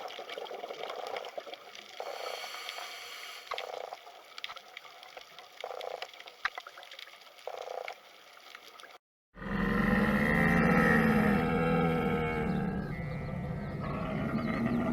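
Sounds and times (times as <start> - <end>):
water running and splashing: 0.0 - 9.0.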